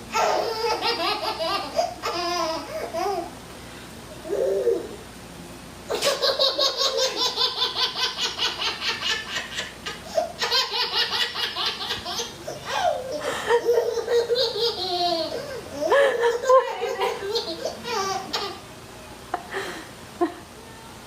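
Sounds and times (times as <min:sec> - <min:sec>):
baby laughing: 0:00.1 - 0:03.3, 0:05.9 - 0:18.6.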